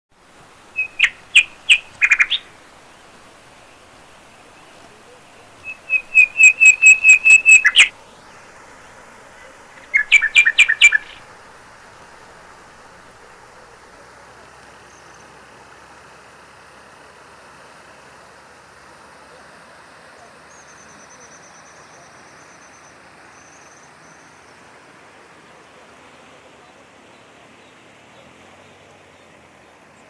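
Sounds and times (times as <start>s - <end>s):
bird calling sharp notes: 0.7s - 2.6s, 5.6s - 7.9s, 9.8s - 11.2s.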